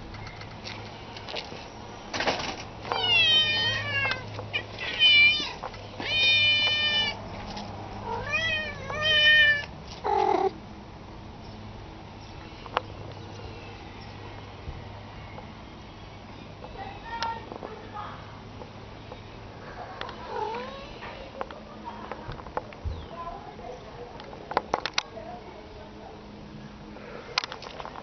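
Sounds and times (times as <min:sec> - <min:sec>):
cats meowing: 0:02.9 - 0:07.3, 0:08.0 - 0:10.6, 0:20.1 - 0:21.1.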